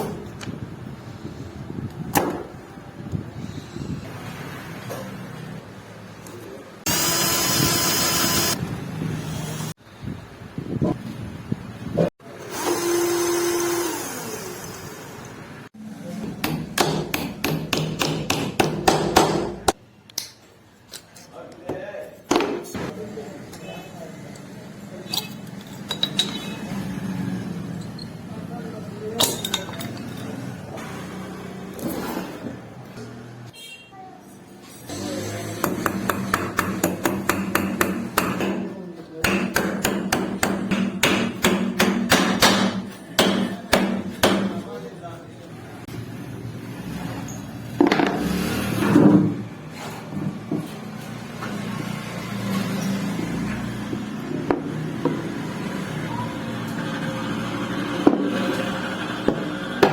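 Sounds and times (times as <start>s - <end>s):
machine whirring: 6.9s - 8.6s
hammer knocking: 16.3s - 19.8s, 35.6s - 44.7s.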